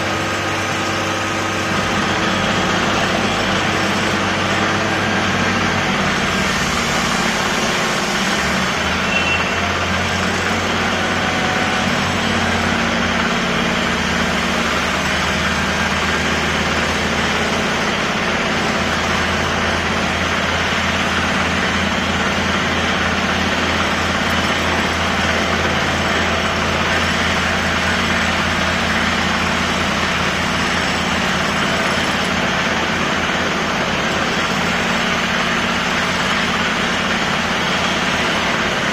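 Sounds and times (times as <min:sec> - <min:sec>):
construction machine engine running: 0:00.0 - 0:38.9.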